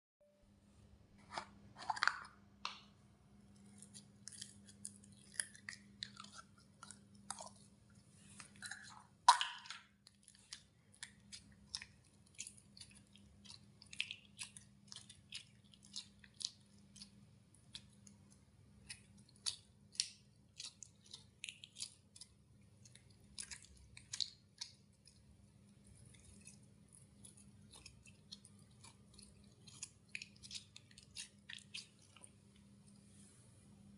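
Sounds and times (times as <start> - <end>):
slime popping and squelching: 8.4 - 32.4.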